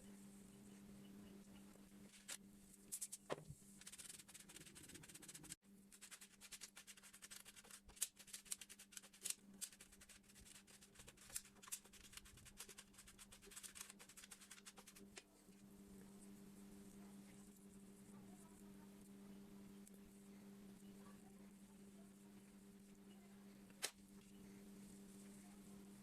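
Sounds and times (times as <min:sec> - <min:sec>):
low steady hum: 0:00.0 - 0:26.0
scratching and clicking of hand work: 0:02.1 - 0:15.6.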